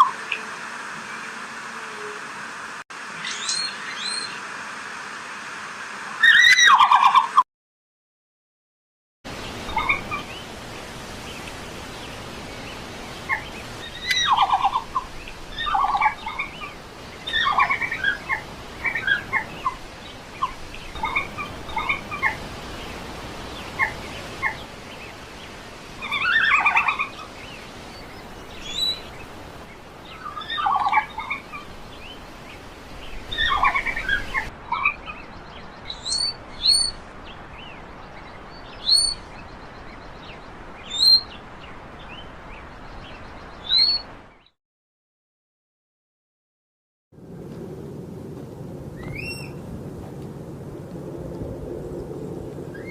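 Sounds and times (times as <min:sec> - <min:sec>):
steady background hiss: 0:00.0 - 0:06.2, 0:09.3 - 0:44.3.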